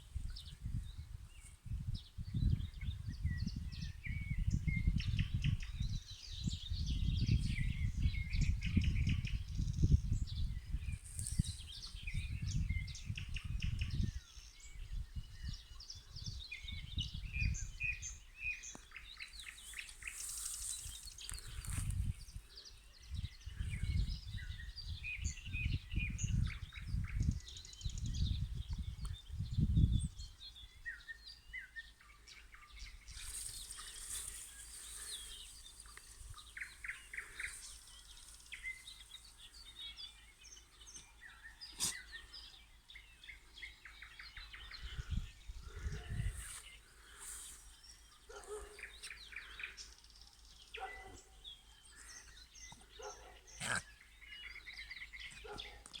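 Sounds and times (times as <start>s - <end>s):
nightingales singing: 30.5s - 55.8s.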